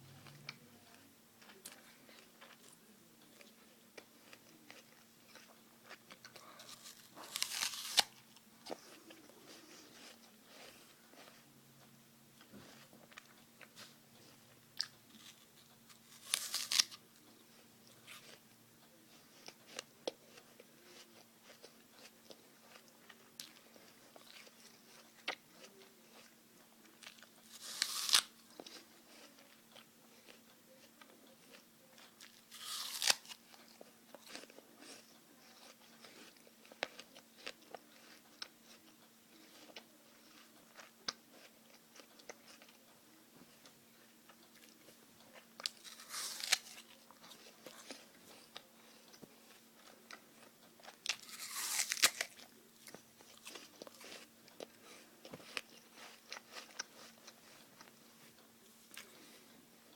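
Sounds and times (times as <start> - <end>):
faint steady hum: 0.0 - 59.9
chewing: 0.2 - 59.9
apple crunching bites: 4.0 - 11.4, 14.8 - 17.0, 27.0 - 30.4, 31.4 - 38.8, 44.6 - 57.9.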